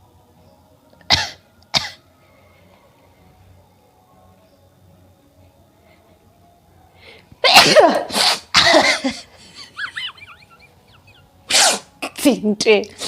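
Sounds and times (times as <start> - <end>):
woman sneezing loudly: 7.4 - 9.1, 11.5 - 12.3.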